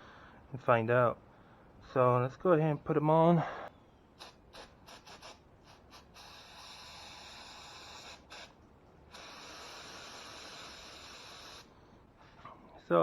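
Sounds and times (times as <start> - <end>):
spray can hissing: 4.2 - 11.7.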